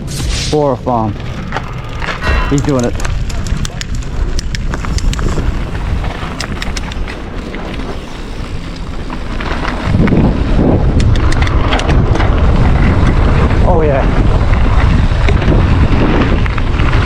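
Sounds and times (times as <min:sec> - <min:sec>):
bike rolling on trail rumble: 0:00.0 - 0:17.0
wind buffeting microphone: 0:00.0 - 0:17.0
sharp clicks and knocks: 0:01.5 - 0:05.4, 0:06.3 - 0:07.2, 0:11.0 - 0:12.3.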